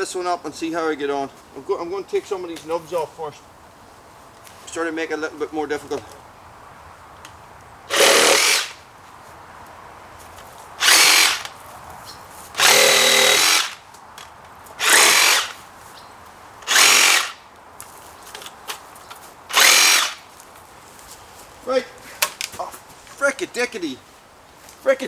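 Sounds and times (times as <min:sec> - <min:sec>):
power tool bursts: 0:07.9 - 0:08.8, 0:10.8 - 0:11.6, 0:12.6 - 0:13.8, 0:14.8 - 0:15.6, 0:16.6 - 0:17.4, 0:19.5 - 0:20.2.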